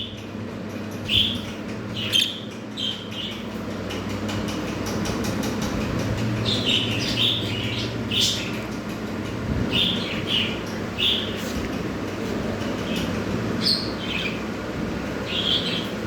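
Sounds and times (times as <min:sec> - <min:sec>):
budgerigars chirping: 0:01.1 - 0:03.5, 0:06.5 - 0:08.6, 0:09.7 - 0:11.4, 0:12.8 - 0:14.4, 0:15.2 - 0:15.9.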